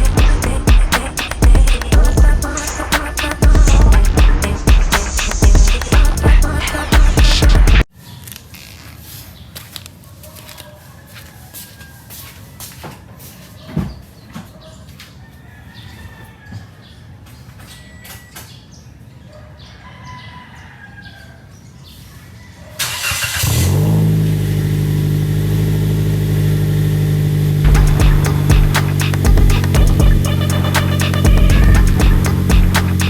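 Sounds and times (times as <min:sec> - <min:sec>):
car engine starting and idling: 0:00.0 - 0:07.9, 0:22.8 - 0:33.0
birds chirping: 0:27.7 - 0:33.0.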